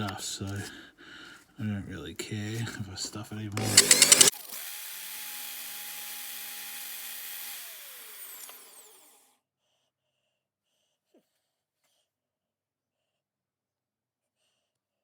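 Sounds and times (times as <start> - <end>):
small electric motor whining: 3.6 - 9.1.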